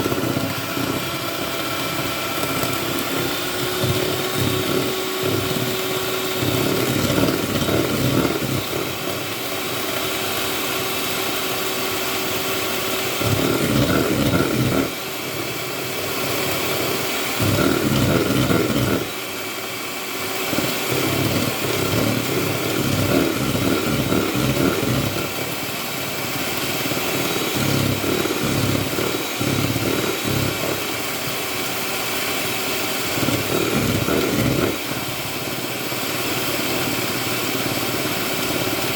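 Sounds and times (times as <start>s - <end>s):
electric mixer running: 0.0s - 38.9s.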